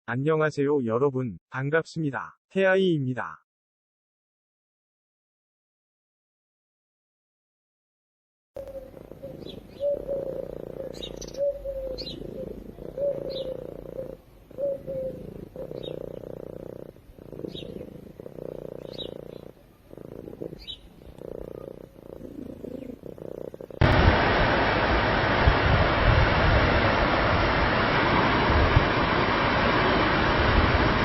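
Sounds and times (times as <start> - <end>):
cat snoring: 8.6 - 23.8
loud steady noise: 23.8 - 31.0.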